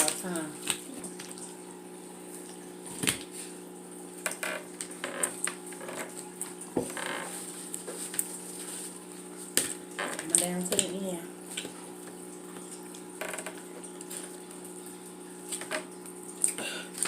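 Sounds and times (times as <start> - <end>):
food being chewed: 15.4 - 17.0.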